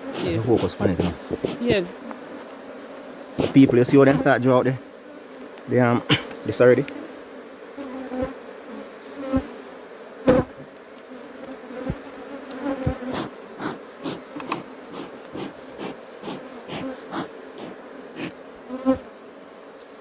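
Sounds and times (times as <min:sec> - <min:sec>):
bees buzzing: 0:00.0 - 0:20.0.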